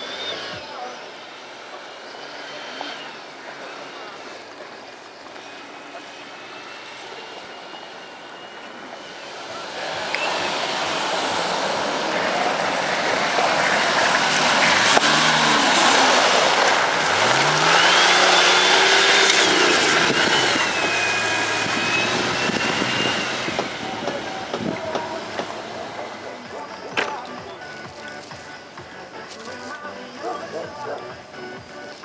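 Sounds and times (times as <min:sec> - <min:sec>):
diesel engine revving: 0:00.0 - 0:32.0
high whine: 0:00.0 - 0:32.0
steady rushing noise: 0:00.0 - 0:32.0.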